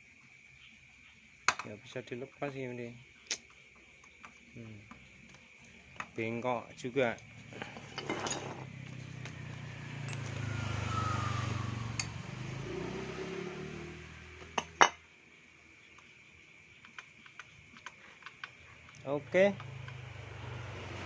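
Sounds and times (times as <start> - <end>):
metallic clinks of engine parts: 4.0 - 10.4
vehicle engine drone passing: 8.5 - 14.6, 19.3 - 21.0.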